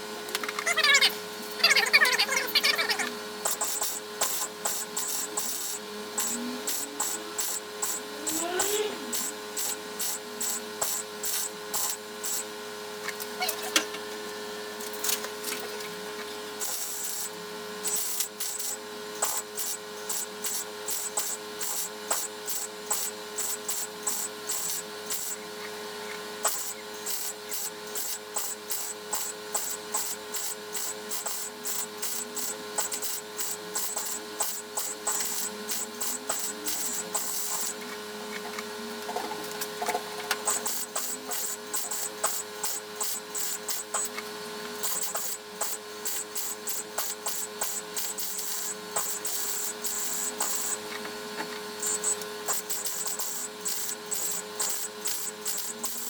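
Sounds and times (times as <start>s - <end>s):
electric welder crackling: 0.2s - 56.0s.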